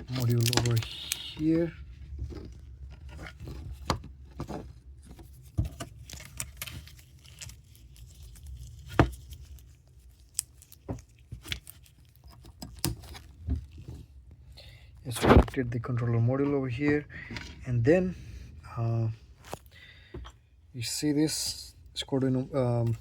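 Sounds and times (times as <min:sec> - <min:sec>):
rustling of handled cable: 0:00.0 - 0:17.6, 0:22.3 - 0:23.0.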